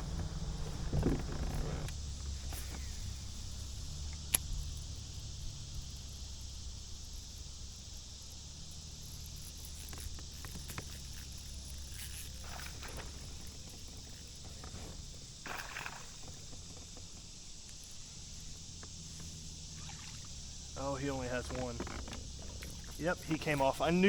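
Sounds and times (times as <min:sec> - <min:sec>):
faint knocks and rustles: 0:00.0 - 0:03.4, 0:09.5 - 0:19.4
high-pitched insect chorus: 0:00.0 - 0:24.0.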